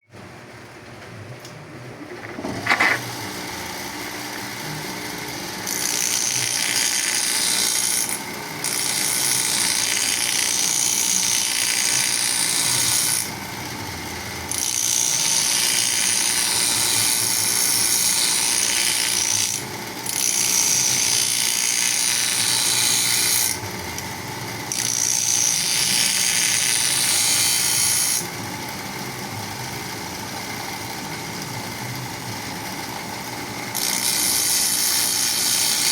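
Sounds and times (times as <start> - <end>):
power grinder running: 2.2 - 3.2.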